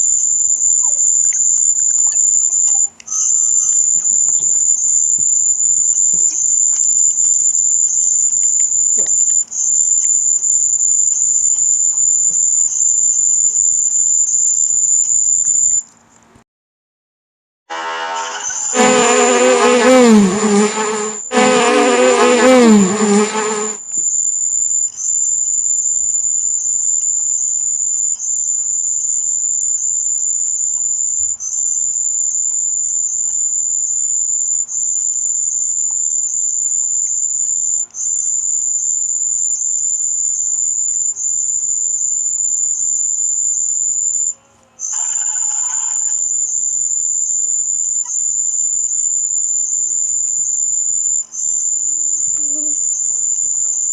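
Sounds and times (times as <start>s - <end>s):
high-pitched electronic tone: 17.7s - 23.8s
pitched sound-effect bursts: 17.7s - 23.8s.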